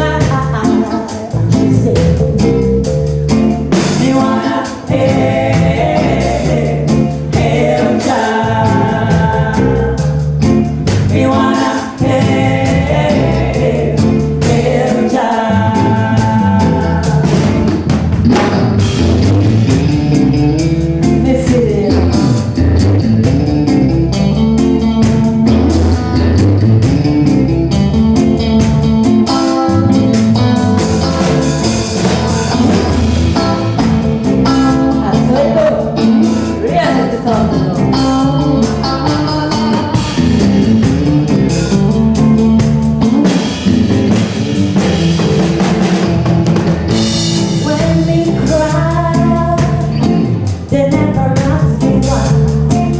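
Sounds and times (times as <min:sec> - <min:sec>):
person singing: 0:00.0 - 0:10.2, 0:11.0 - 0:17.8, 0:21.0 - 0:22.8, 0:29.4 - 0:40.4, 0:41.2 - 0:43.7, 0:47.4 - 0:52.9
drums: 0:00.0 - 0:52.9
guitar: 0:00.0 - 0:52.9.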